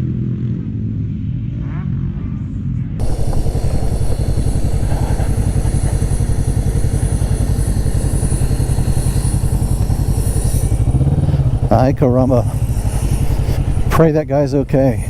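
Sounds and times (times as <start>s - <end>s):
motorcycle engine running: 3.0s - 15.0s.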